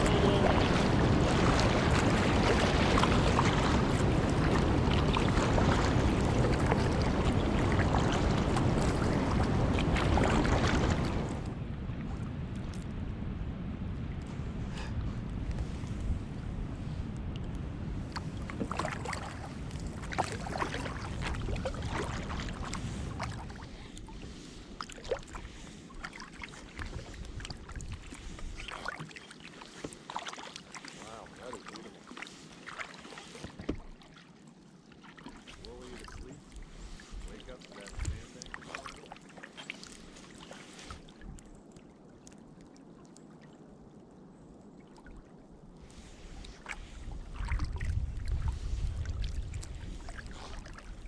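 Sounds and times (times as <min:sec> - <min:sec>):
paddle strokes splashing water: 0:00.0 - 0:11.6, 0:17.9 - 0:51.0
steady low rumble: 0:00.0 - 0:24.2.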